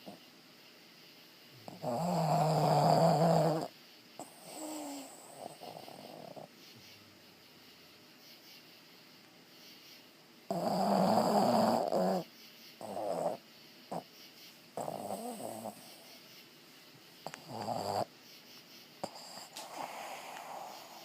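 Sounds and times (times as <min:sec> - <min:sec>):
dog snoring: 0:01.6 - 0:06.5, 0:10.5 - 0:14.1, 0:14.8 - 0:16.2, 0:17.2 - 0:18.1, 0:19.0 - 0:21.0.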